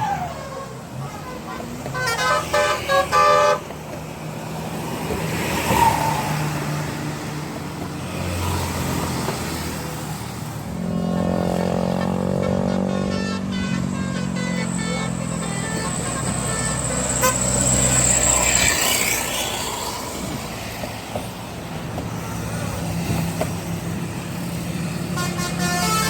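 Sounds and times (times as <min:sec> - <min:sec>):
bus musical horn: 0:00.0 - 0:03.9, 0:10.7 - 0:18.8, 0:25.0 - 0:26.0
heavy vehicle engine hum: 0:00.0 - 0:26.0
road traffic passing: 0:00.0 - 0:26.0.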